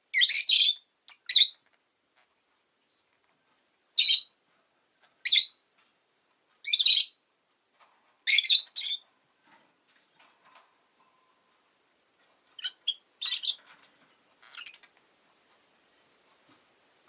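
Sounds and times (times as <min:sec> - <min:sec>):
lovebird chirping: 0:00.1 - 0:01.7, 0:04.0 - 0:04.4, 0:05.2 - 0:05.6, 0:06.6 - 0:07.2, 0:08.2 - 0:09.1, 0:12.6 - 0:13.7, 0:14.4 - 0:15.0.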